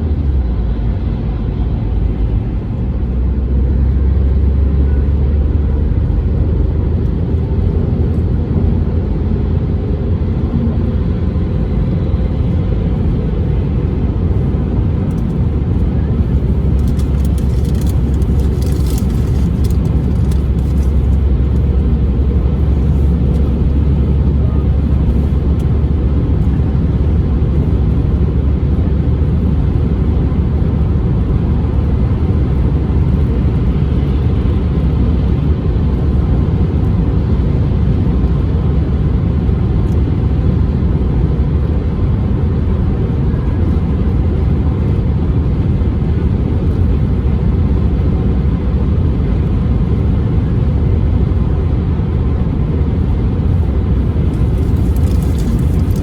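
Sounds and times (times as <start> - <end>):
car driving on road: 0.0 - 56.0.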